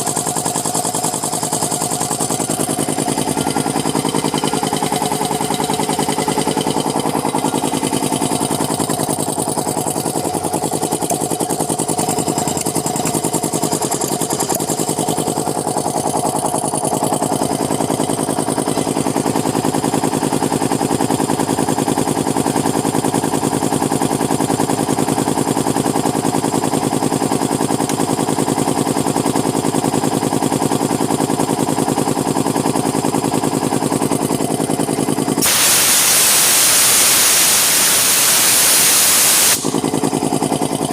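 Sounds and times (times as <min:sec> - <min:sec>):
piston air compressor pulsing: 0:00.0 - 0:40.9.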